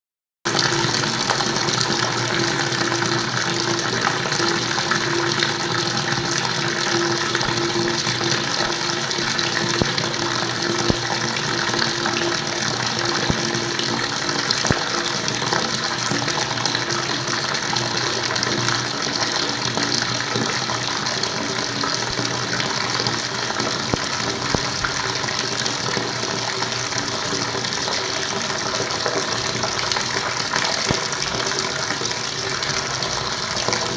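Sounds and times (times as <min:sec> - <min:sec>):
water rushing: 0:00.5 - 0:19.8.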